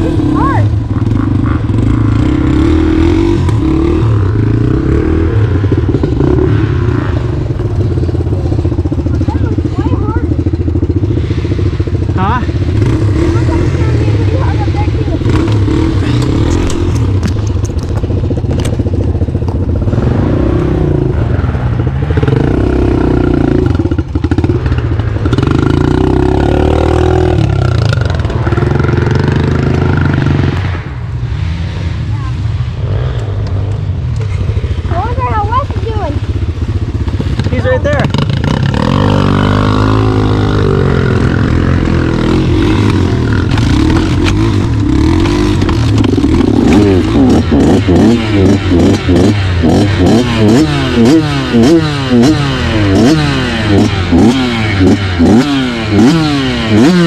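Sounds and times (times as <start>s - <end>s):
dirt bike engine revving: 0.0s - 57.0s
dirt bike engine under load: 15.3s - 20.0s, 36.9s - 57.0s.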